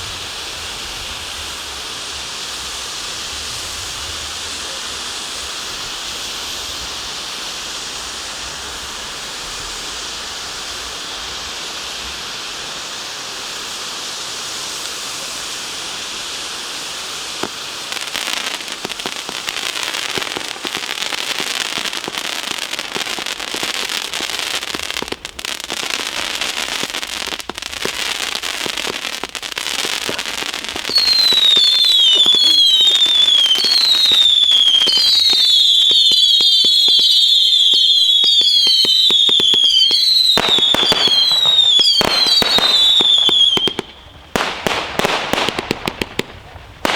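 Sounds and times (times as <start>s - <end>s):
falling firework whistles: 0.0s - 46.9s
firework crackling: 0.0s - 46.9s
firework fountains hissing: 0.0s - 46.9s.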